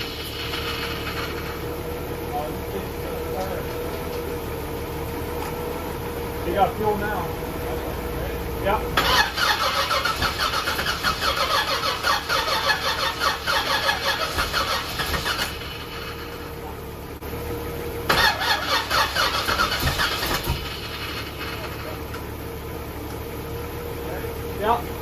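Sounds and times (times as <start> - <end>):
engine starter cranking: 0.0 - 1.7, 9.0 - 16.2, 18.1 - 22.3.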